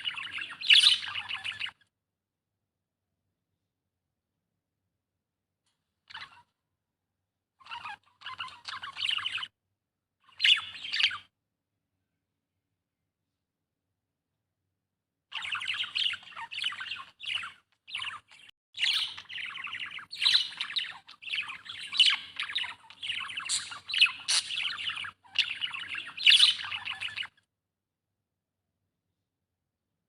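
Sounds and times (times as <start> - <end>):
budgerigar chirping and warbling: 0.0 - 1.8, 6.1 - 6.5, 7.6 - 9.5, 10.2 - 11.3, 15.3 - 27.4.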